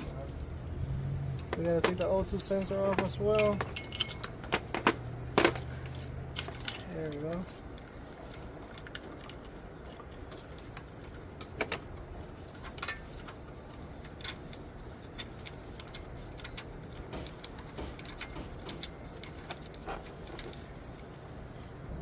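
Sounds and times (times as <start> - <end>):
steady low hum: 0.0 - 22.0
metallic clinks of hand tools: 1.5 - 4.6
sharp knocks: 17.0 - 19.0.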